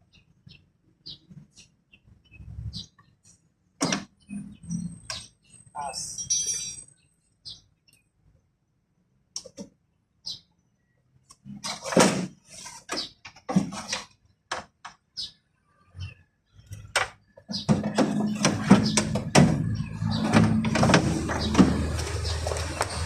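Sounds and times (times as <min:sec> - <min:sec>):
scattered clicks and knocks: 0:16.7 - 0:23.0.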